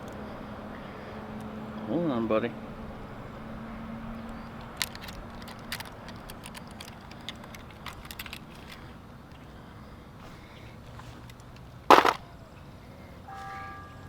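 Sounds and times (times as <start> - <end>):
fishing gear clicking and rattling: 4.5 - 9.5, 10.9 - 12.3.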